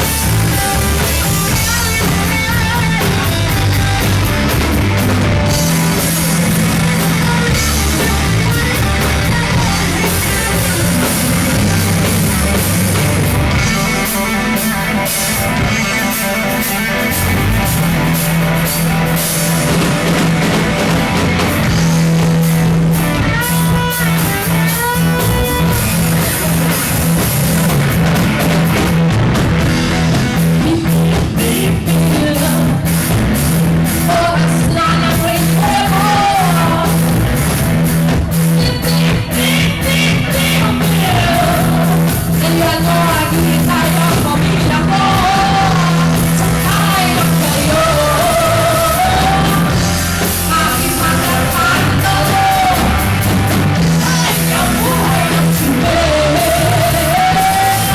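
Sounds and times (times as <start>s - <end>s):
lead guitar: 0.0s - 57.9s
rock band playing: 0.0s - 57.9s.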